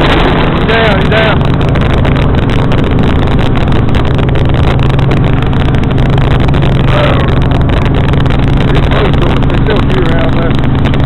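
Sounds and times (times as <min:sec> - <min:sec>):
helicopter engine and rotors: 0:00.0 - 0:11.0.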